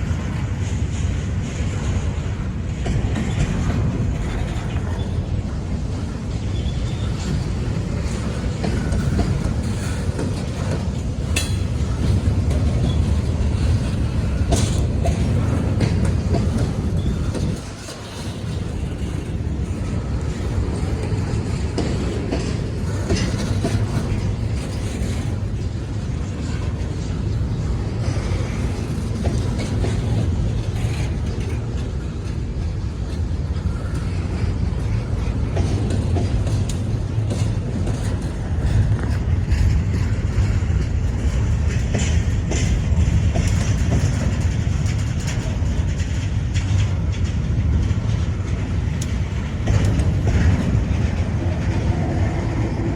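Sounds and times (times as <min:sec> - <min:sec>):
train wheels rumbling on rail: 0:00.0 - 0:52.9
wheels clicking over rail joints: 0:00.0 - 0:52.9.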